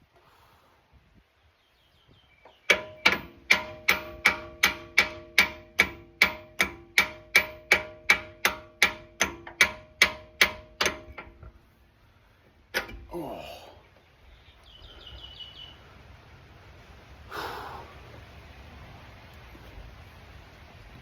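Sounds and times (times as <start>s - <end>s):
hammer blows on metal: 2.6s - 11.4s.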